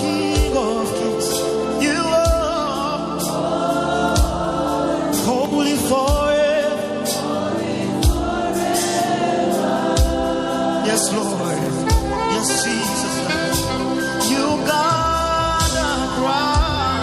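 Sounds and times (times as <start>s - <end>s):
voices singing gospel: 0.0s - 17.0s
held chords: 9.9s - 17.0s.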